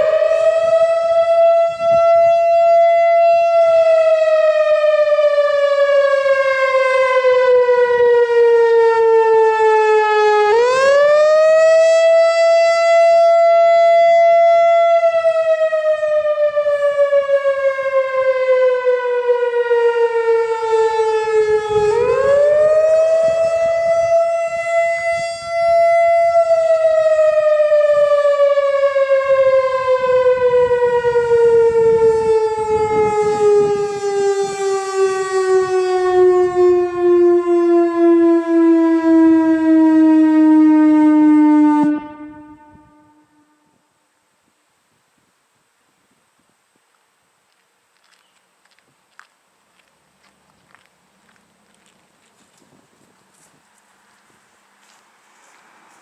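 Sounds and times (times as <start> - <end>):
outdoor warning siren wailing: 0.0 - 44.3.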